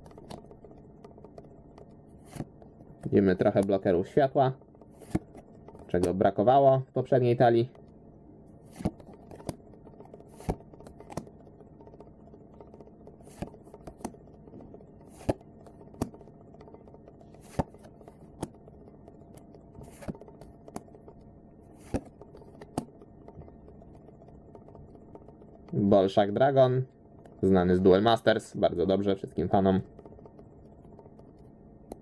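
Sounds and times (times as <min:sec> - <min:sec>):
trading cards clicking: 0:00.0 - 0:04.2, 0:04.8 - 0:06.2, 0:08.6 - 0:25.8
faint steady hum: 0:00.0 - 0:32.0.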